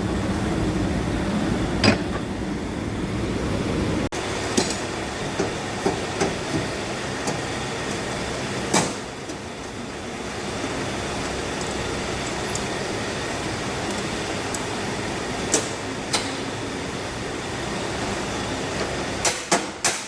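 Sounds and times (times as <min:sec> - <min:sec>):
workshop background hum: 0:00.0 - 0:20.0
sharp knocks of tools or panels: 0:19.2 - 0:20.0.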